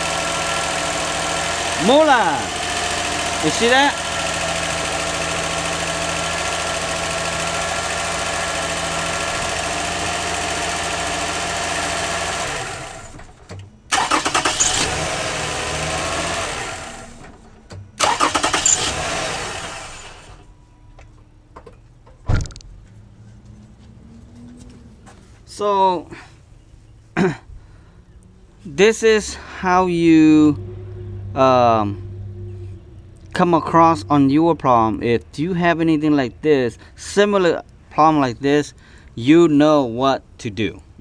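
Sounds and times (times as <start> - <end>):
car engine running: 0.0 - 20.5.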